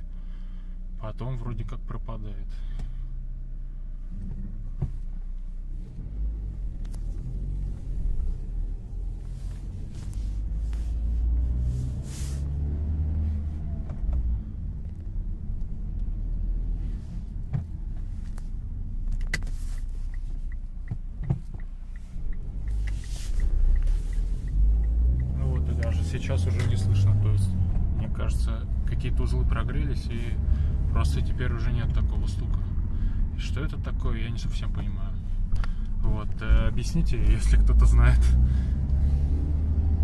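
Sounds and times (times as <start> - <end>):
car engine rumbling: 0.0 - 40.0
light regular ticking: 19.2 - 26.0.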